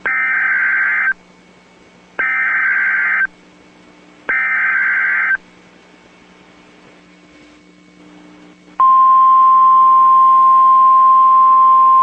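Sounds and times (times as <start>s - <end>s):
warbling digital data tones: 0.0s - 1.2s, 2.2s - 3.3s, 4.3s - 5.4s.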